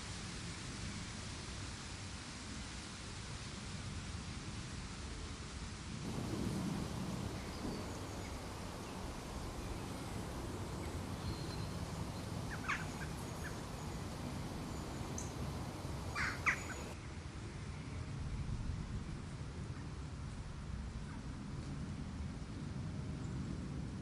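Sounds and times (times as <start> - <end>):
low rumbling noise: 6.0 - 17.0
wild birds calling: 6.1 - 17.0.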